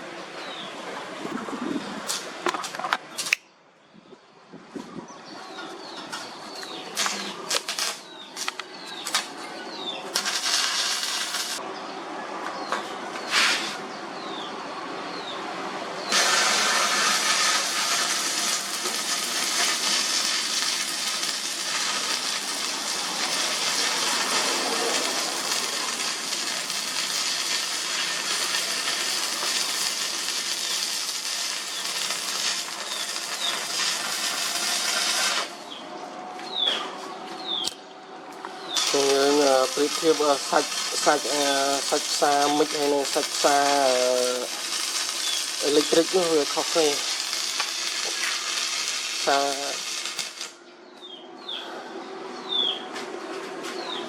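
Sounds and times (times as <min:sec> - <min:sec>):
arc welding crackling: 0:05.8 - 0:11.6, 0:16.0 - 0:35.9, 0:37.4 - 0:50.6.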